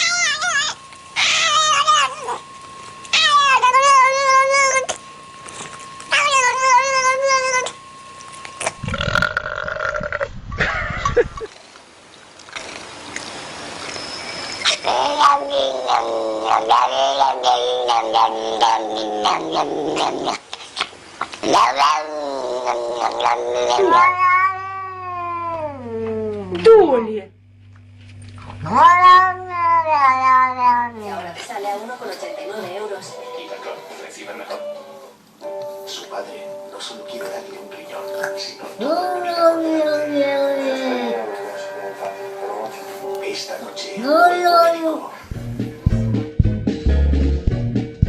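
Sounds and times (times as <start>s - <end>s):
cat yowling: 0.0s - 2.4s, 3.1s - 5.0s, 6.1s - 7.8s, 14.6s - 20.4s, 21.4s - 26.4s, 28.6s - 31.1s, 34.4s - 35.2s, 38.8s - 41.6s, 44.0s - 45.2s
steady low hum: 0.0s - 46.2s.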